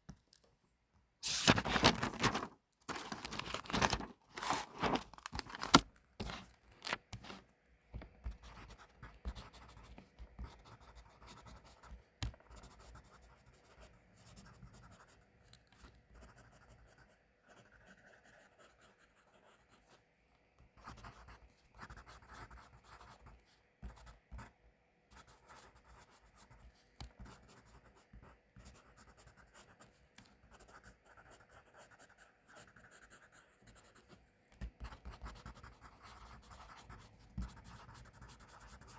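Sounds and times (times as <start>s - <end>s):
pencil scratching on paper: 8.2s - 15.2s, 15.8s - 19.9s, 30.5s - 38.9s.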